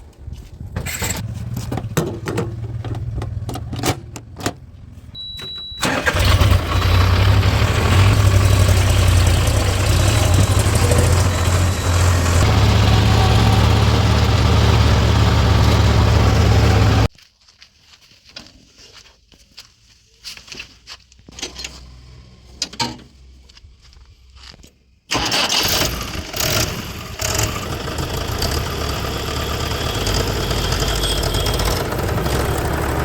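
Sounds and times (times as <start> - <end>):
diesel engine running: 5.8 - 17.1, 25.1 - 33.0.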